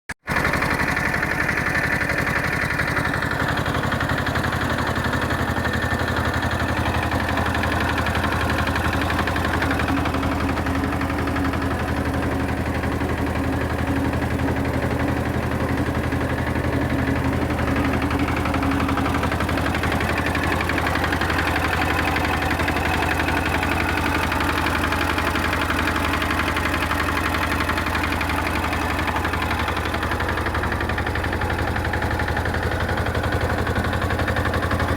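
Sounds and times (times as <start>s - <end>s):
tractor diesel engine running: 0.1s - 34.9s.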